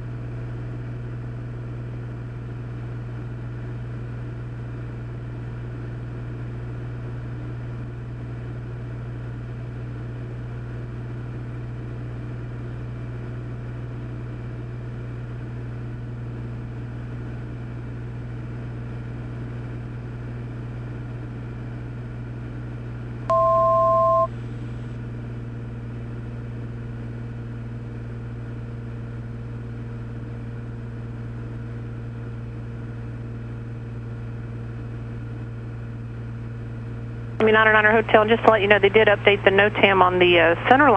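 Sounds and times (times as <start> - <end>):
airplane engine and propeller drone: 0.0 - 40.9
two-note electronic alert tone: 23.3 - 24.3.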